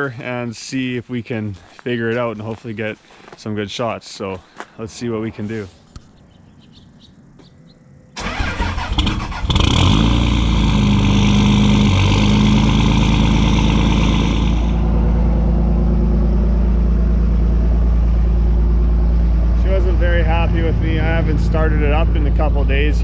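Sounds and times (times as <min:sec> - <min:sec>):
person speaking: 0:00.0 - 0:05.9, 0:19.6 - 0:23.0
diesel engine cranking and idling: 0:08.2 - 0:23.0.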